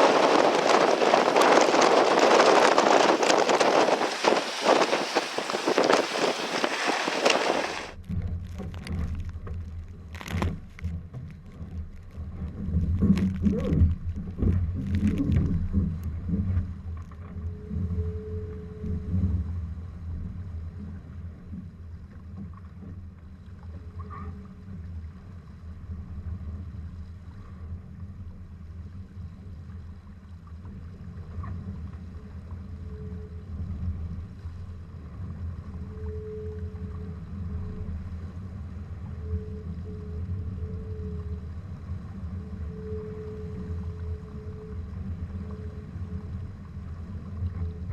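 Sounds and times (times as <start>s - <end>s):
wind and water hiss: 0.0s - 8.0s
muffled low rumble: 0.0s - 47.9s.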